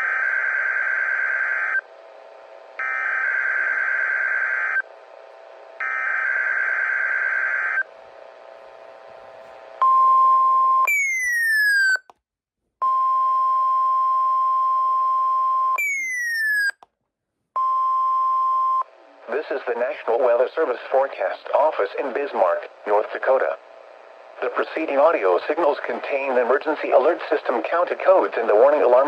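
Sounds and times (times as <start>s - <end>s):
steady warning alarm tone: 2.8s - 4.8s, 5.8s - 7.9s.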